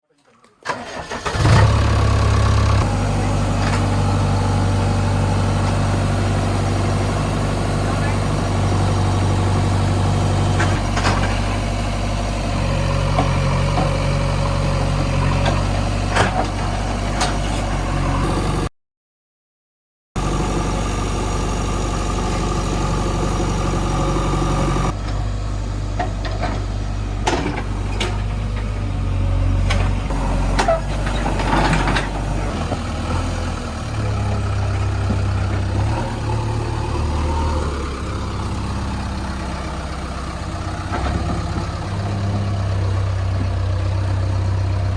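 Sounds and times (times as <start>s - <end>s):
backhoe diesel engine running: 0.6s - 18.7s, 20.2s - 44.9s
knocks and clanks: 26.0s - 28.7s.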